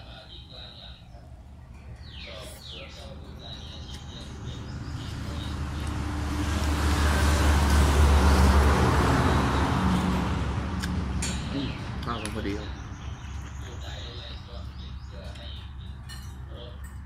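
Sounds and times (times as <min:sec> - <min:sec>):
vehicle passing by: 0:02.4 - 0:15.2.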